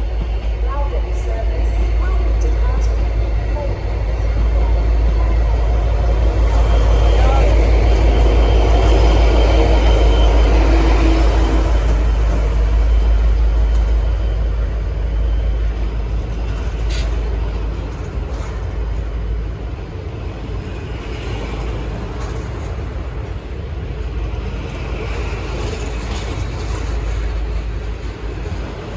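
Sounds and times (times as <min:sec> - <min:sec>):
diesel locomotive engine rumble: 0:00.0 - 0:28.9.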